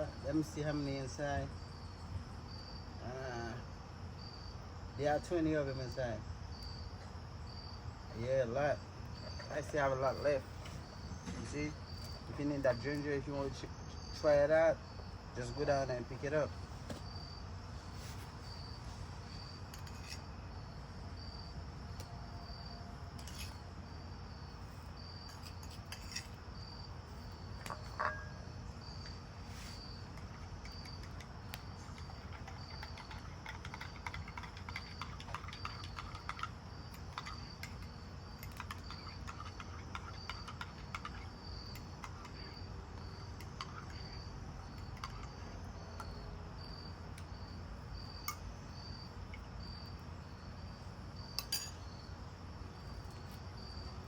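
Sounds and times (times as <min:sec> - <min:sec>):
cricket chirping: 0:00.0 - 0:54.0
loud clink: 0:27.7 - 0:28.4.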